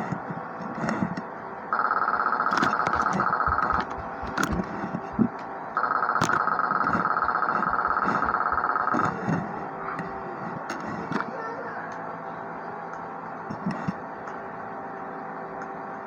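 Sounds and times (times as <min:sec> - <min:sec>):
steady high-pitched tone: 0:00.0 - 0:11.4.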